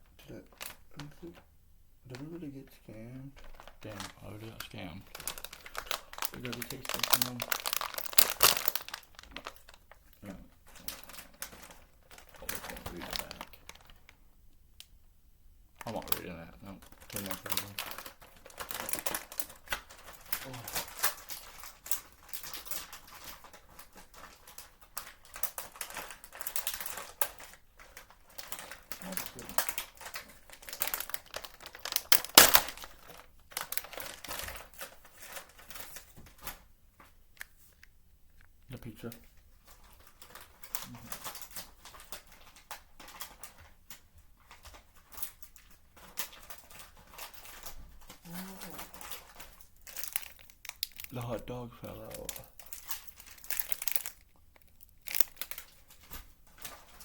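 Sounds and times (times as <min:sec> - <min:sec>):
plastic packaging crinkling: 0:00.1 - 0:01.5, 0:02.1 - 0:14.9, 0:15.8 - 0:57.0
person humming: 0:48.2 - 0:48.9.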